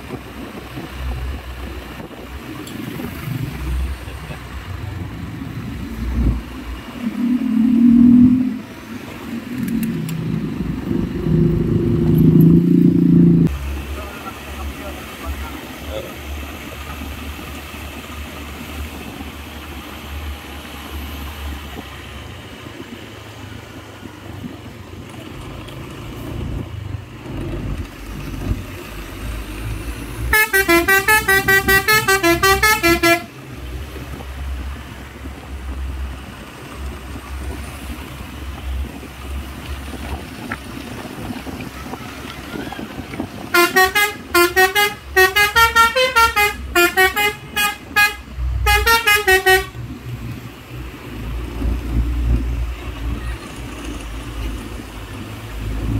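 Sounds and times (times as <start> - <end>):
truck engine rumble: 0.0 - 55.9
multi-tone truck horn: 30.3 - 33.4, 43.4 - 49.9.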